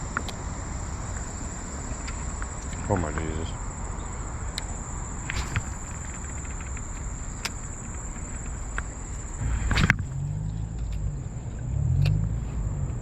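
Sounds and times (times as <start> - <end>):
insects droning: 0.0 - 13.0
sharp clicks and rustling: 1.9 - 12.2
low rustle and thump: 5.2 - 7.1, 7.9 - 11.4.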